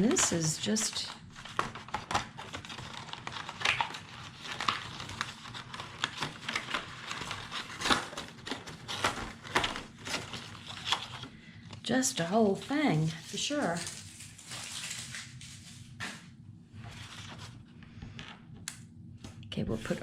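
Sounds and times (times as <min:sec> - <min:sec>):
paper pieces clicking and crackling: 0:00.0 - 0:11.3
paper rustling and crinkling: 0:00.0 - 0:11.4, 0:12.5 - 0:16.2, 0:16.8 - 0:17.6.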